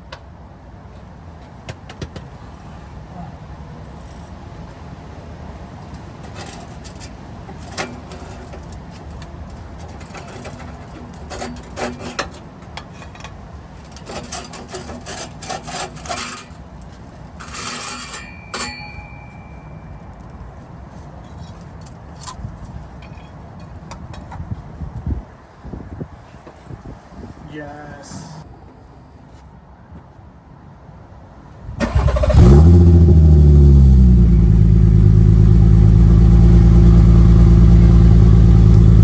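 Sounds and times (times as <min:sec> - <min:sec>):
metal clinks and scraping: 0:03.8 - 0:04.4, 0:05.6 - 0:20.5, 0:21.2 - 0:24.3.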